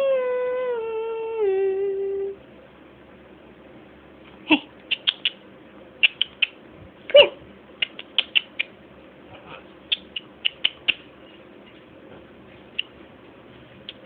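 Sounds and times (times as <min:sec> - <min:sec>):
bird chirping: 0:04.9 - 0:05.4, 0:06.0 - 0:06.6, 0:09.9 - 0:11.4.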